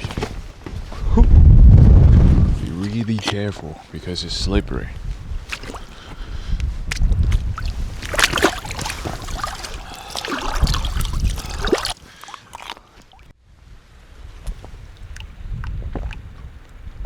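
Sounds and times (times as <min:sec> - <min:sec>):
wind buffeting microphone: 0:00.0 - 0:03.2, 0:04.1 - 0:12.0, 0:13.6 - 0:17.0
water splashing and sloshing: 0:02.2 - 0:13.4, 0:14.4 - 0:17.0.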